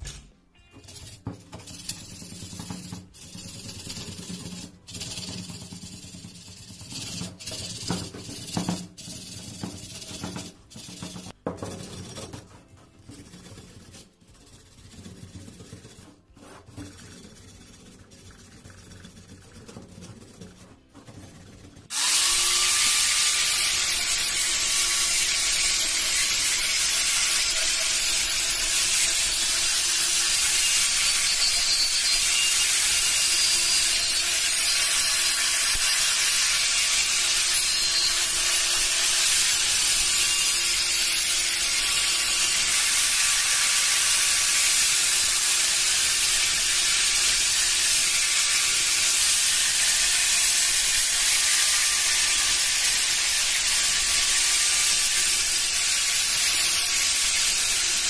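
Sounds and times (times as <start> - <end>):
power tool motor: 21.9 - 58.0
abrasive hiss on metal: 41.8 - 58.0.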